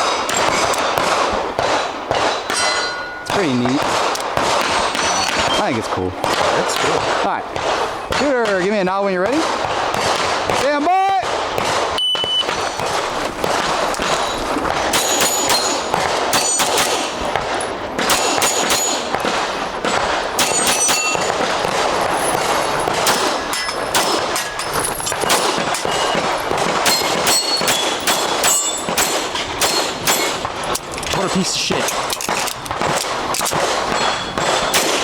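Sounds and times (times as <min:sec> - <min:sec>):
bullets clanging on steel targets: 0:00.0 - 0:01.0, 0:02.2 - 0:03.9, 0:04.7 - 0:05.8, 0:12.0 - 0:13.2, 0:13.9 - 0:35.0
rapid pistol fire: 0:00.0 - 0:02.5, 0:03.4 - 0:05.5, 0:06.2 - 0:35.0.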